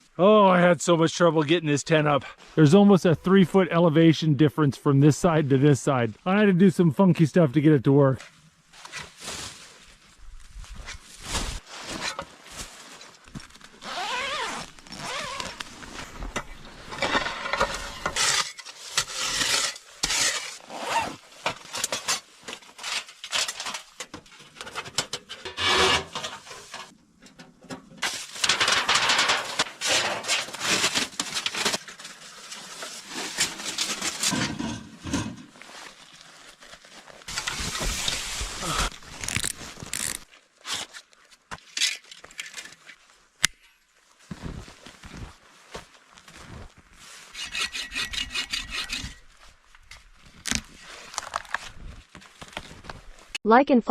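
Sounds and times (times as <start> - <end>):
scraping and rubbing: 13.8 - 27.0, 37.2 - 41.0, 46.4 - 53.4.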